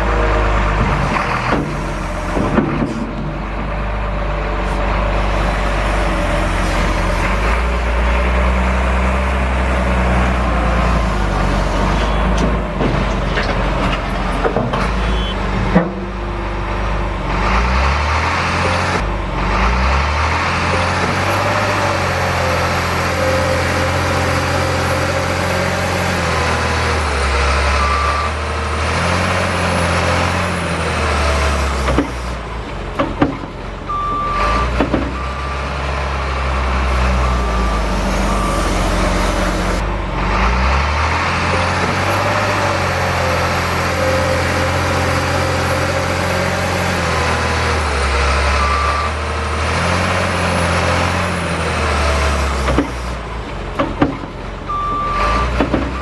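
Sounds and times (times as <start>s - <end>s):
diesel engine sound: 0.0s - 56.0s
high electric motor whine: 4.7s - 11.9s
reversing beeps: 8.9s - 12.6s, 15.0s - 15.4s, 27.5s - 28.5s, 33.9s - 35.9s, 37.1s - 39.8s, 48.3s - 49.3s, 54.7s - 56.0s.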